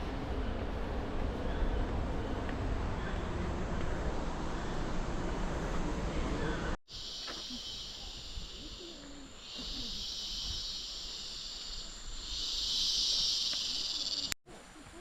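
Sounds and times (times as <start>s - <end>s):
hissing insect chorus: 6.9s - 14.4s.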